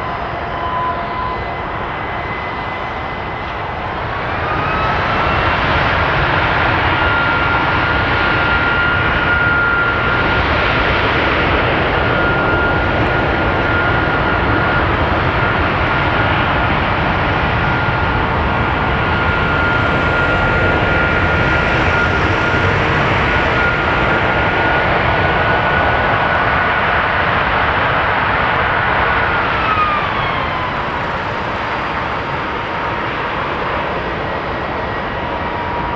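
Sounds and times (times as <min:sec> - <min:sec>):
jet engine roar with whine: 0:00.0 - 0:35.9.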